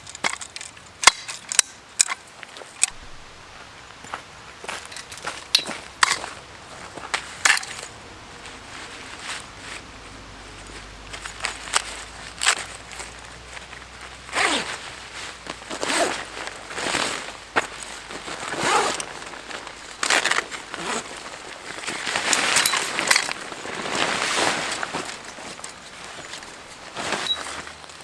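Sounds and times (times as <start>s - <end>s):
camping gear rustling and scraping: 0.0s - 28.0s.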